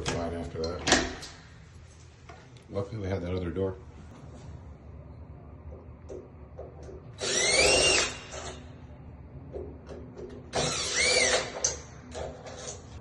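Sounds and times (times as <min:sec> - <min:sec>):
cordless drill whirring: 0:07.2 - 0:08.5, 0:10.6 - 0:11.7.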